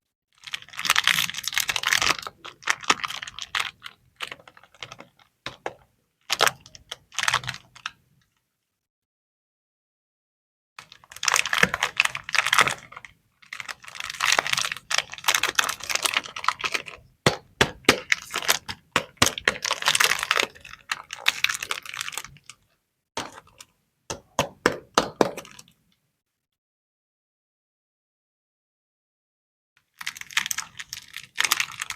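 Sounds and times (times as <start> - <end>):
wrappers rustling and crackling: 30.0 - 31.9.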